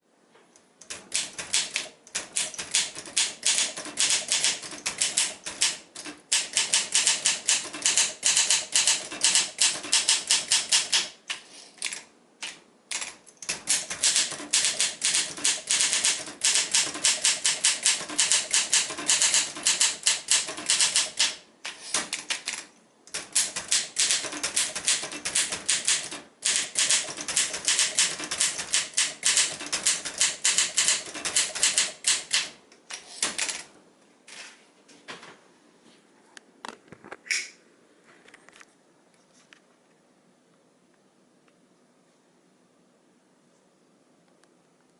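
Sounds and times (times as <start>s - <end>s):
manual typewriter typing: 0.8s - 33.7s.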